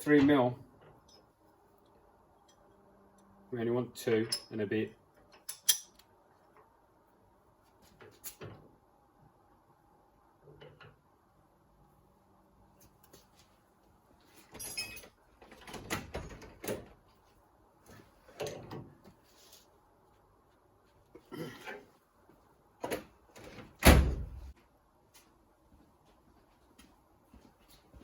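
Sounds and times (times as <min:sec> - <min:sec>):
metal tools clunking and rattling: 0:14.4 - 0:16.8.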